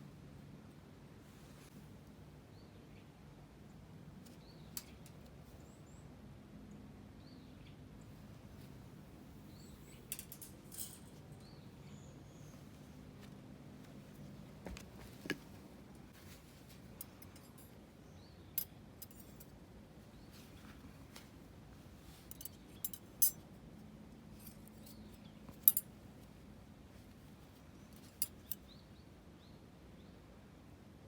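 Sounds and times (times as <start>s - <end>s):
light metal clicks and clinks: 9.5s - 11.5s, 16.7s - 17.8s, 18.6s - 19.6s, 22.2s - 23.5s, 24.2s - 26.0s, 27.9s - 28.8s.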